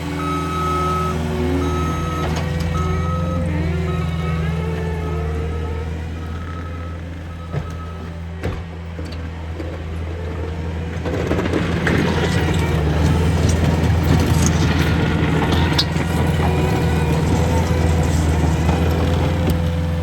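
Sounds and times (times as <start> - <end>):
diesel engine running: 0.0 - 20.0
clanks and rattles: 7.4 - 20.0.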